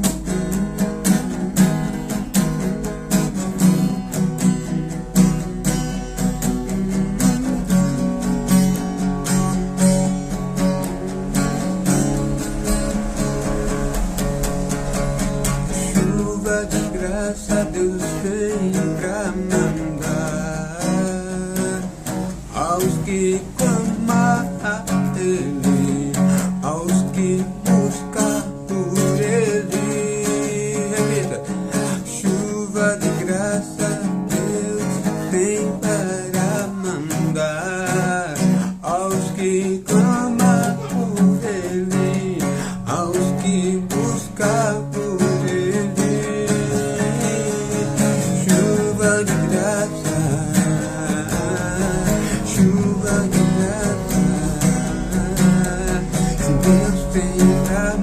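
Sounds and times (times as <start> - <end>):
bending melody line: 0.0 - 58.0
strummed acoustic guitar chords: 0.0 - 58.0.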